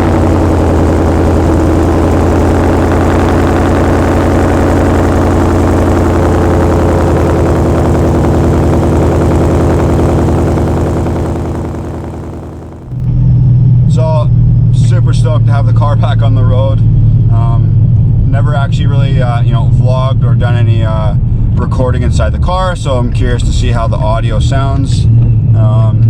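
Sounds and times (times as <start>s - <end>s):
car engine idling: 0.0s - 13.1s.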